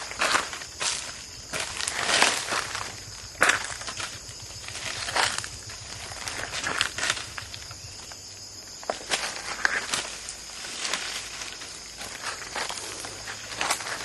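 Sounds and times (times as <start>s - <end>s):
crunching in dry leaves: 0.0s - 14.0s
insects droning: 0.0s - 14.0s.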